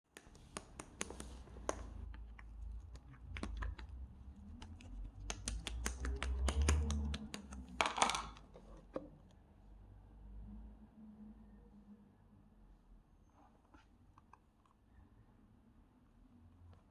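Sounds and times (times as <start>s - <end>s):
light clicks and taps: 0.1s - 9.4s.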